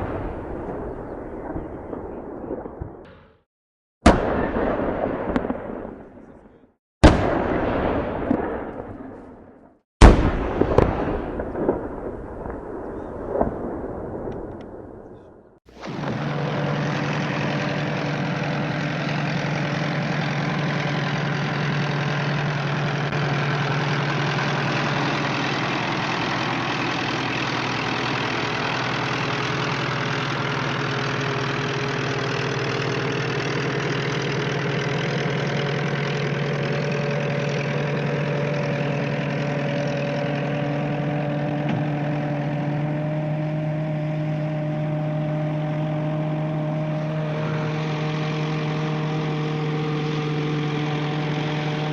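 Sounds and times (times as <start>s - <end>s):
tank engine droning: 15.7s - 51.9s.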